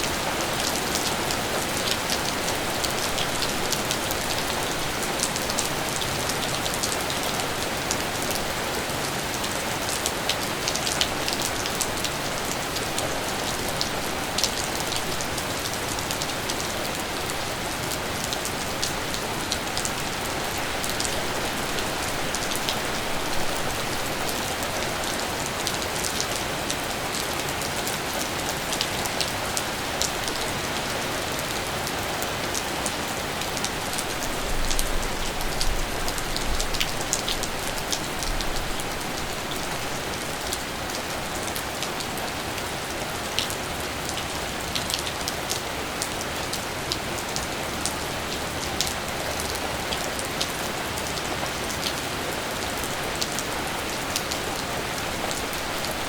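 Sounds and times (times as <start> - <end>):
steady rain falling: 0.0 - 56.0
sharp ticks of raindrops: 43.3 - 54.7.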